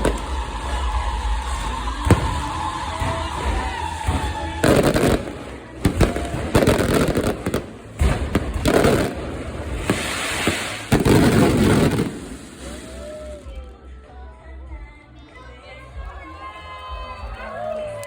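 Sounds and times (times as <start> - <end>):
firework bangs: 0.0 - 13.4
fireworks crackling: 0.0 - 13.7.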